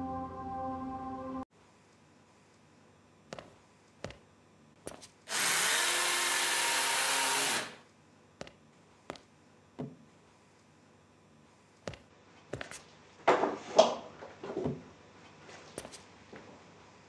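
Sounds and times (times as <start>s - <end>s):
small electric motor spinning: 5.3s - 7.8s.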